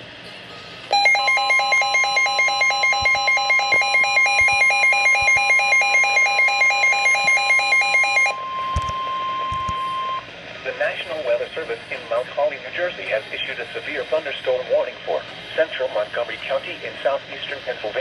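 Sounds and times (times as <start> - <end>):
harsh pulsing electronic alarm: 0.9 - 10.2
steady warning tone: 0.9 - 10.3.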